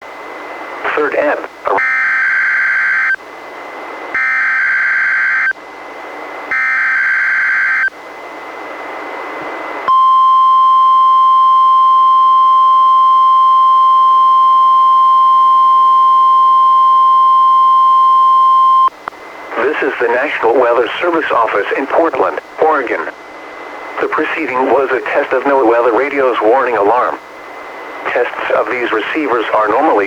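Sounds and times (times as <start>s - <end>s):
steady warning alarm tone: 1.7s - 3.2s, 4.1s - 5.6s, 6.5s - 8.0s, 9.9s - 18.9s
static hiss: 18.9s - 30.0s.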